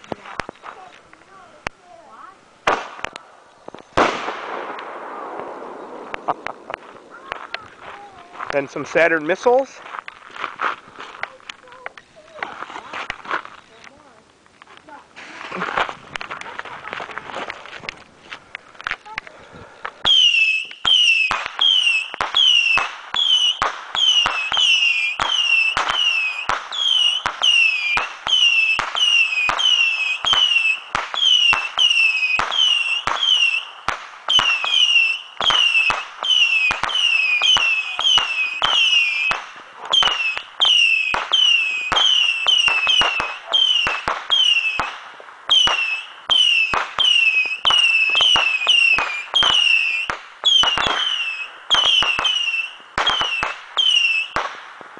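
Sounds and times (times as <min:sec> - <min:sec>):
rocket pops: 0:02.6 - 0:08.6, 0:15.2 - 0:54.9
falling rocket whistles: 0:20.0 - 0:33.7, 0:34.3 - 0:39.4, 0:45.5 - 0:54.4.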